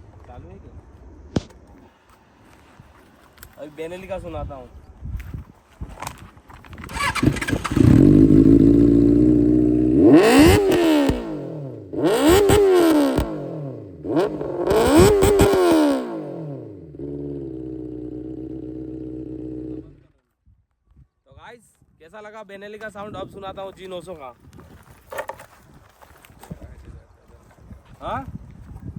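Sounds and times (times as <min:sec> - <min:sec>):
motorcycle engine revving: 0:06.8 - 0:20.1.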